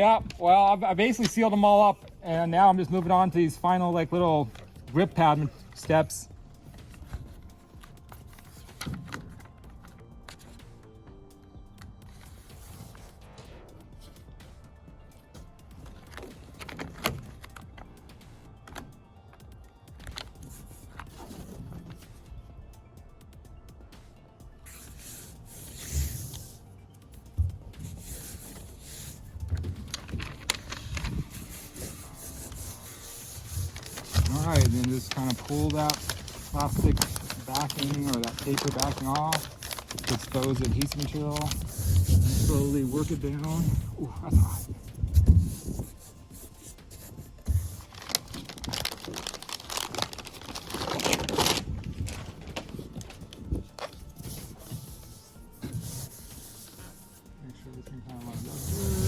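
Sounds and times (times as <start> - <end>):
plastic backing crinkling: 0.0 - 6.3, 29.4 - 46.0, 47.0 - 55.8
rubber pad rubbing and scuffing: 24.8 - 26.6, 27.7 - 57.1, 58.3 - 59.0.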